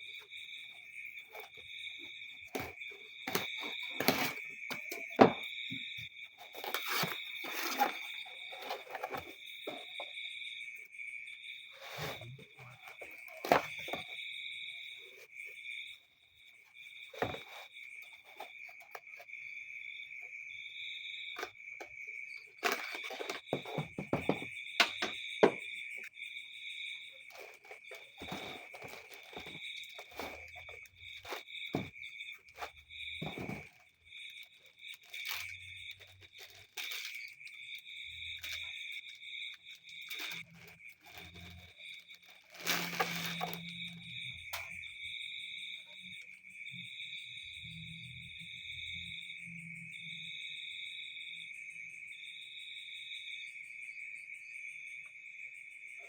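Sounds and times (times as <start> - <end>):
insects chirring: 0.0 - 56.0
scattered clicks and knocks: 22.6 - 26.1.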